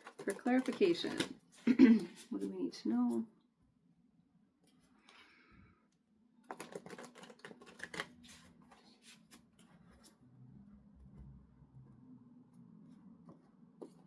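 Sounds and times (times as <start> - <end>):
cards handled: 0.0 - 2.4, 6.5 - 9.5
cards shuffling: 0.0 - 2.5, 6.5 - 9.5.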